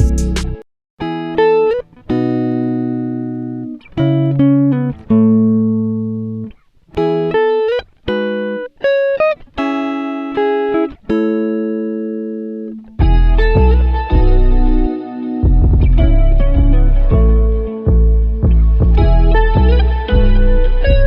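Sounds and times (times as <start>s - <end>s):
slow chords ringing out: 13.0s - 21.0s.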